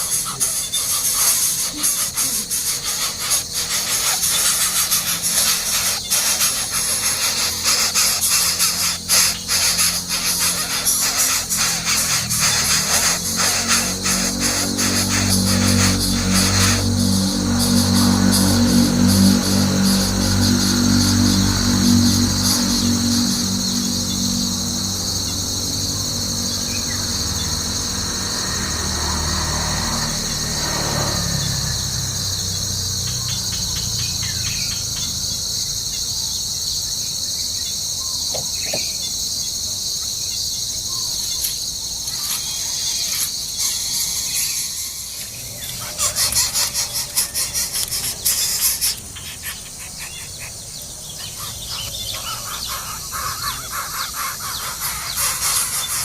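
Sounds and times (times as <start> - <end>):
rapid high animal calls: 0.0 - 27.2, 42.1 - 56.0
insect chorus drone: 0.0 - 56.0.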